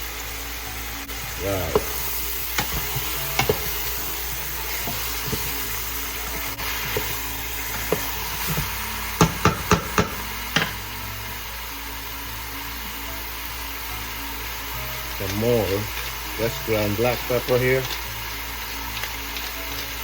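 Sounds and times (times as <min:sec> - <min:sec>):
food sizzling in oil: 0:00.0 - 0:20.0
spatula stirring: 0:01.2 - 0:11.0
spatula knocking on pot: 0:01.6 - 0:10.8.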